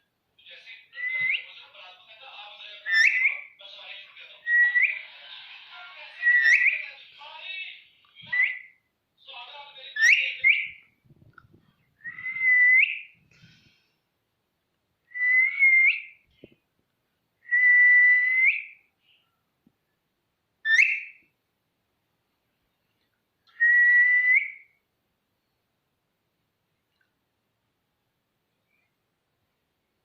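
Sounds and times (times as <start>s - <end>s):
parakeet whistling: 1.0s - 1.5s, 2.8s - 3.5s, 4.4s - 5.1s, 6.2s - 6.9s, 8.2s - 8.8s, 10.0s - 10.8s, 12.0s - 13.2s, 15.1s - 16.2s, 17.5s - 18.8s, 20.6s - 21.2s.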